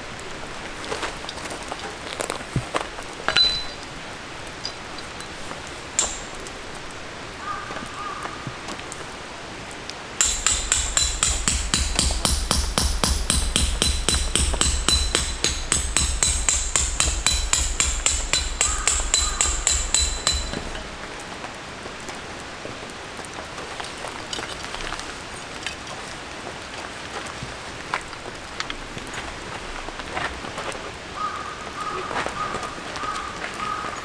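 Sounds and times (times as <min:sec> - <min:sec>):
hammer striking metal: 0:03.3 - 0:03.9, 0:06.0 - 0:06.6, 0:10.2 - 0:21.6
rain pattering: 0:20.9 - 0:34.0.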